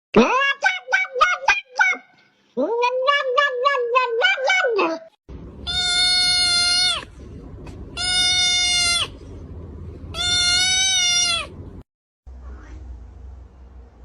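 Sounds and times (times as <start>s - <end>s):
animal crying out: 0.2s - 2.0s, 2.6s - 7.2s, 7.9s - 9.2s, 10.1s - 11.6s.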